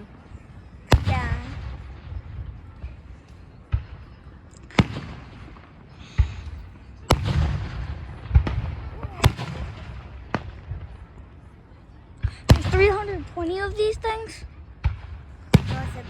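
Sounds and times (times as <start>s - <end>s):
fireworks rumble: 0.0s - 16.0s
fireworks booming: 0.9s - 2.7s, 4.6s - 11.1s, 12.2s - 14.2s, 14.8s - 16.0s.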